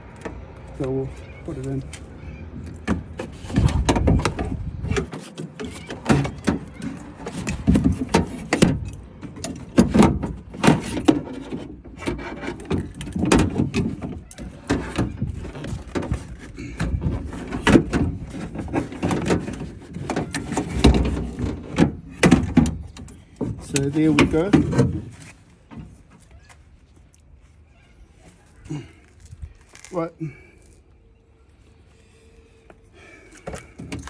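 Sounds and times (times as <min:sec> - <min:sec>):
metal squeaking: 0:00.8 - 0:26.6
metal clunks and knocks: 0:02.5 - 0:26.1.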